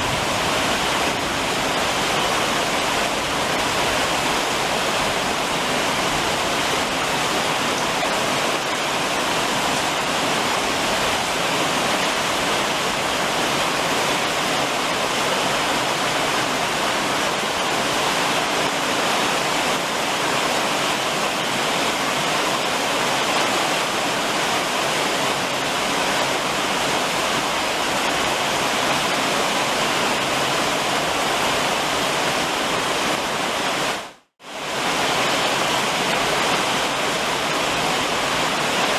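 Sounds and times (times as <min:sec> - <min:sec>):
heavy rain drumming on a roof: 0:00.0 - 0:38.9.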